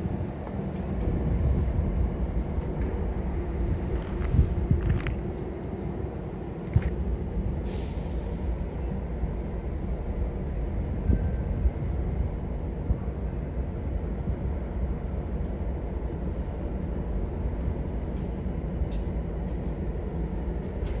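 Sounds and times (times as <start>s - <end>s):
diesel locomotive rumbling: 0.0s - 21.0s
air hiss: 7.6s - 8.6s.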